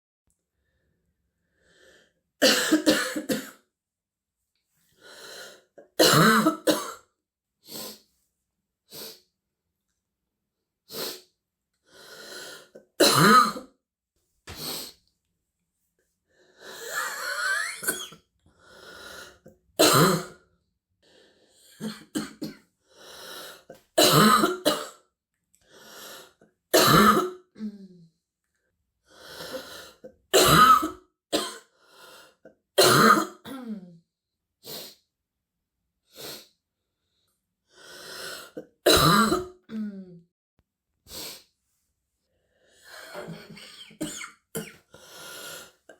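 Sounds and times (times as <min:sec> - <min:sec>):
girl barking cough: 0:02.4 - 0:03.6, 0:06.0 - 0:07.0, 0:13.0 - 0:13.6, 0:19.8 - 0:20.3, 0:24.0 - 0:25.0, 0:26.8 - 0:27.4, 0:30.4 - 0:31.6, 0:32.8 - 0:33.7, 0:38.9 - 0:39.6, 0:43.1 - 0:44.8
wheezy breaths: 0:36.1 - 0:38.6, 0:44.8 - 0:45.9.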